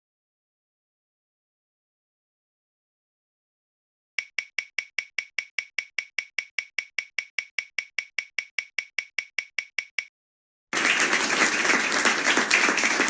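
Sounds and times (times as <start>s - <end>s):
prize wheel ticking clicks: 4.2s - 10.1s.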